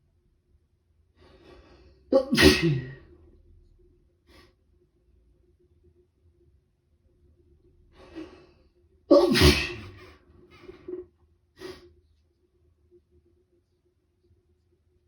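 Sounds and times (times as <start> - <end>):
person breathing: 1.2 - 2.1, 7.9 - 8.8, 11.6 - 11.9
person sneezing: 2.1 - 3.0, 9.1 - 10.2.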